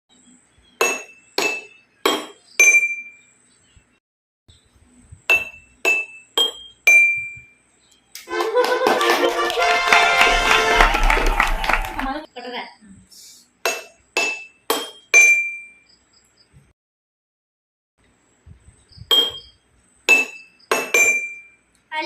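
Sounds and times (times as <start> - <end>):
dense wash of music: 9.3 - 12.2
sharp ringing clinks: 20.1 - 21.6.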